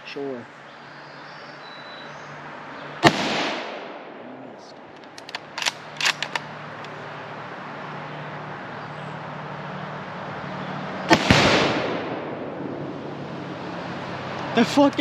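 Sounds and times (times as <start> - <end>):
rifle shot: 3.0 - 4.1, 5.0 - 6.5, 11.1 - 12.5.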